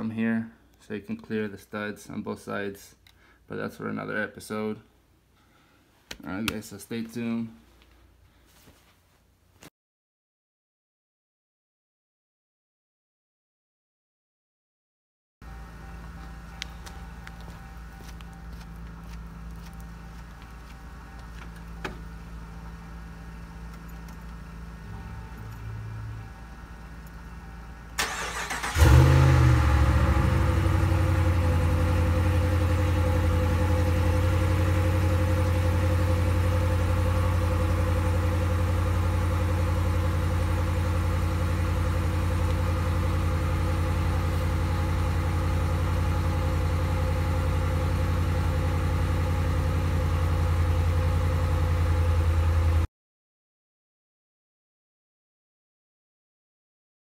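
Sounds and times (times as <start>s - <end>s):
vehicle engine idling: 15.4s - 52.9s
engine starter cranking: 27.9s - 29.6s.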